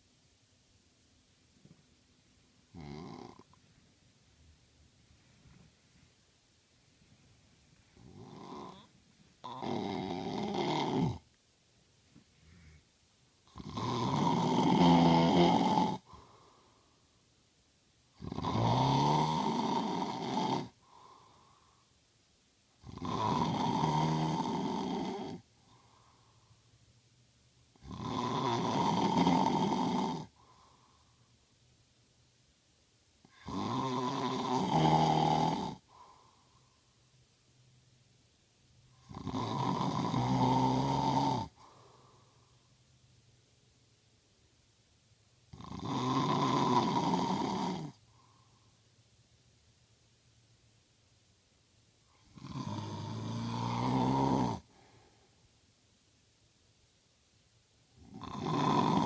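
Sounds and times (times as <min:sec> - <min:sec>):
man snoring: 0:02.7 - 0:03.5, 0:08.0 - 0:11.2, 0:13.5 - 0:16.3, 0:18.2 - 0:21.2, 0:22.8 - 0:25.5, 0:27.8 - 0:30.4, 0:33.3 - 0:36.1, 0:39.0 - 0:41.7, 0:45.5 - 0:48.0, 0:52.2 - 0:54.9, 0:58.0 - 0:59.0
soft breath: 0:12.0 - 0:13.0, 0:16.0 - 0:17.3, 0:20.7 - 0:22.1, 0:25.4 - 0:26.9, 0:30.3 - 0:31.5, 0:35.8 - 0:37.3, 0:41.5 - 0:43.0, 0:47.9 - 0:49.0, 0:54.6 - 0:55.6.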